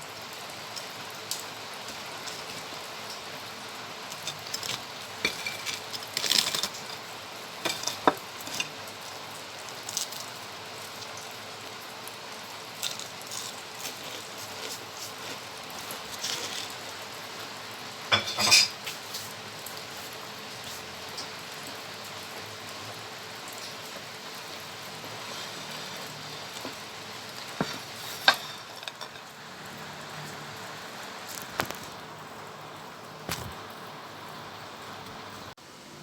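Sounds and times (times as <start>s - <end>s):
food sizzling in hot oil: 0.0s - 35.5s
utensils clinking and scraping: 4.1s - 8.8s, 18.1s - 18.9s, 27.4s - 29.3s.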